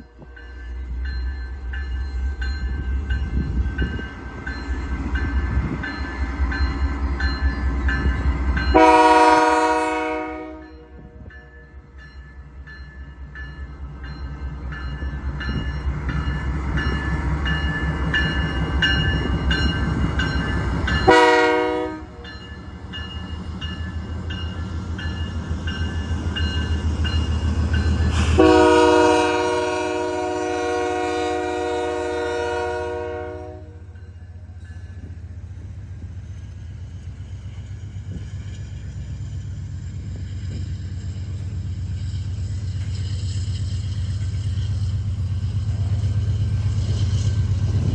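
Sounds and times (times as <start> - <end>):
diesel locomotive rumble: 0.0 - 47.9
train horn blasts: 8.7 - 11.2, 21.0 - 22.3, 28.2 - 34.0.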